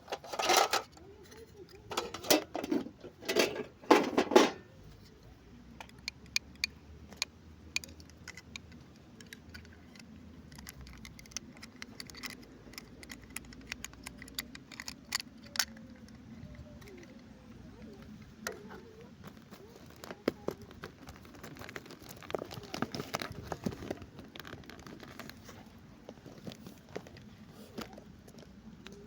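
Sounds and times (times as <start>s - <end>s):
plastic pieces clicking: 5.8s - 25.4s
packaging rustling: 18.8s - 28.1s.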